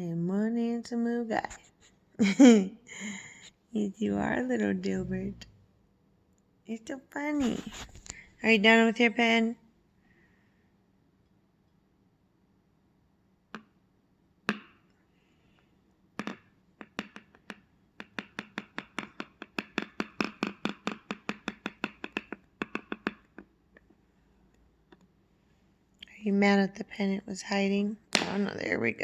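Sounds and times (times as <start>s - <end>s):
bird pecking at plastic: 16.2s - 23.5s.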